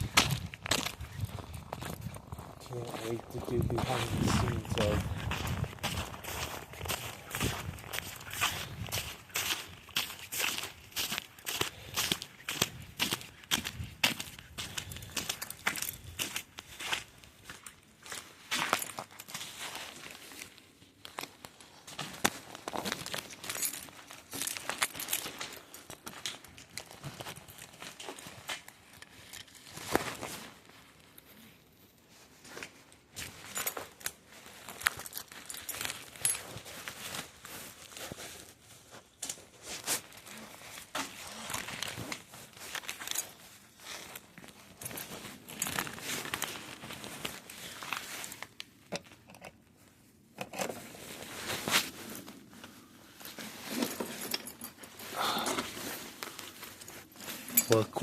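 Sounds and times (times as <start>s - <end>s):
packaging crinkling and rustling: 17.6s - 31.2s, 32.6s - 49.9s, 50.6s - 58.0s.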